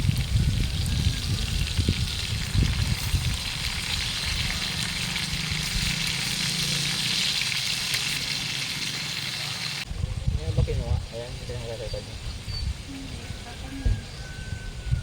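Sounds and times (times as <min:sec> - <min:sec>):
food sizzling in a pan: 0:00.0 - 0:09.9.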